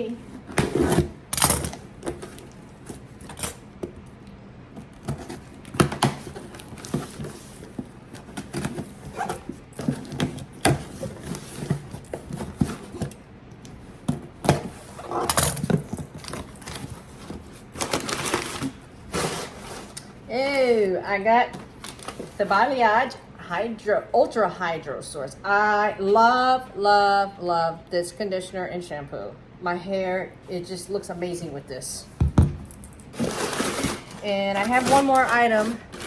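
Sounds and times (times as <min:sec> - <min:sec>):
packaging rustling and crinkling: 0:04.8 - 0:13.2, 0:14.6 - 0:20.0, 0:21.6 - 0:22.4, 0:33.1 - 0:36.0
cardboard box being opened: 0:33.2 - 0:36.0.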